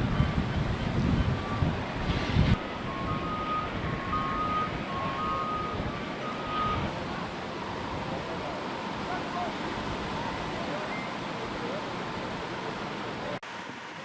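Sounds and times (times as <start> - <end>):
wind buffeting microphone: 0.0 - 12.9
outdoor noise: 0.0 - 14.0
two-tone reversing alarm beeps: 2.8 - 6.9.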